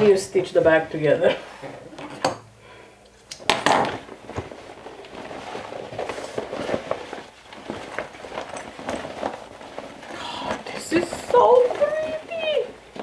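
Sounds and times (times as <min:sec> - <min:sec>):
fabric bag rustling: 0:03.7 - 0:13.0.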